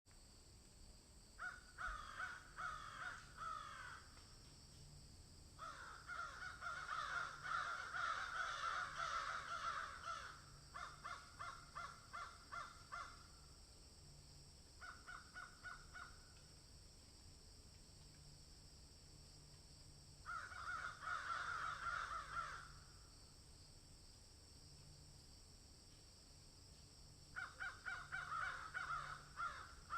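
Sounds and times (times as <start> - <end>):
birds harsh calls: 5.6 - 13.2, 20.3 - 22.7, 27.4 - 29.9.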